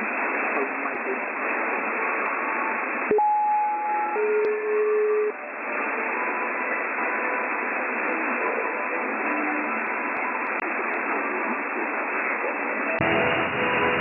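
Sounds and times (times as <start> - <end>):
radio static hiss: 0.0 - 14.0.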